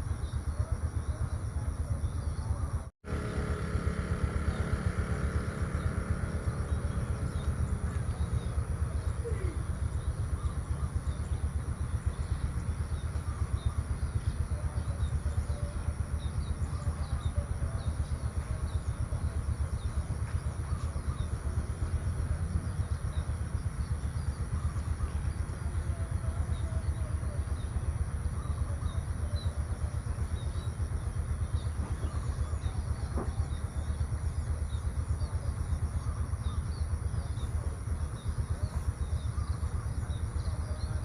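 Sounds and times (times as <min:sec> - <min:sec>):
faint bird chirps: 0:00.0 - 0:41.0.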